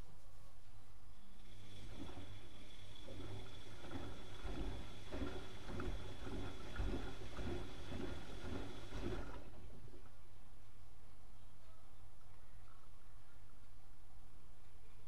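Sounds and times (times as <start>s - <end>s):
washing machine motor hum: 1.3s - 10.2s
water and laundry sloshing: 1.5s - 10.2s.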